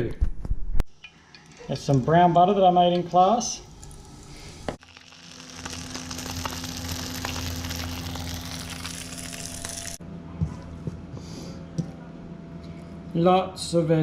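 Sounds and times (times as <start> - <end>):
food sizzling in a frying pan: 3.6 - 10.0.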